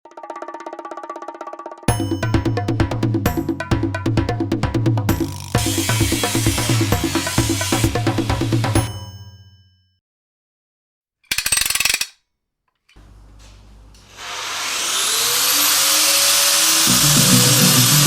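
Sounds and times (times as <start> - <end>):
ratcheting rattle: 5.2 - 8.1, 11.3 - 12.2
power tool whining: 5.2 - 8.9, 14.0 - 18.0.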